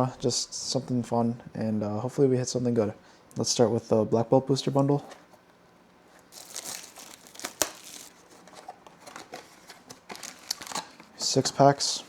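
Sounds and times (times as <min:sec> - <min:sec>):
plastic wrap crinkling and tearing: 0:06.3 - 0:11.3.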